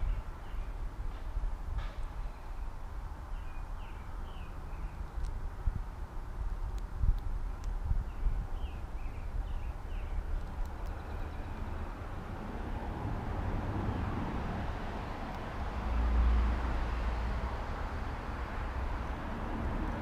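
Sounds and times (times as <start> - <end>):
low outdoor rumble: 0.0 - 20.0
bird chirps: 8.1 - 11.8.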